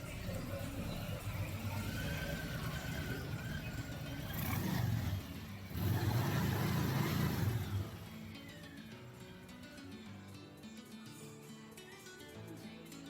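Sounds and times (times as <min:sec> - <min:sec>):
vehicle engine running: 0:00.0 - 0:09.6.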